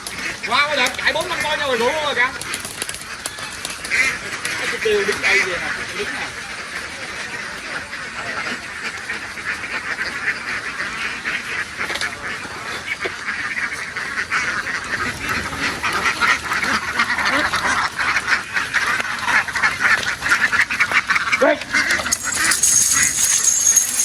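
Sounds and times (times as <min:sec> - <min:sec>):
flock of ducks quacking: 0:03.3 - 0:21.9.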